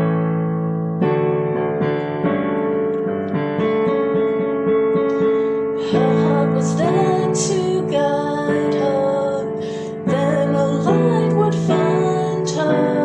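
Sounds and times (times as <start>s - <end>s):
piano chords and runs: 0.0s - 13.0s.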